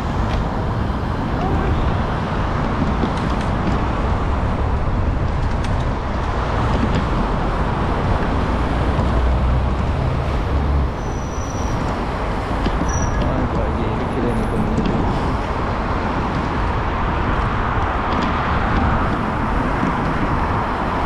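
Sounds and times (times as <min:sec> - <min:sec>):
road traffic rumble: 0:00.0 - 0:21.0
brief high squeal: 0:11.0 - 0:11.8, 0:12.8 - 0:13.3.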